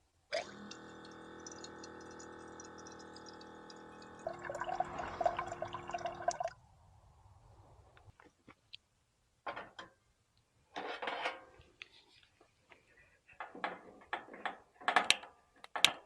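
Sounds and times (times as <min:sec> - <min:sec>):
electric water pump humming: 0:00.0 - 0:06.5
water splashing: 0:00.4 - 0:06.5.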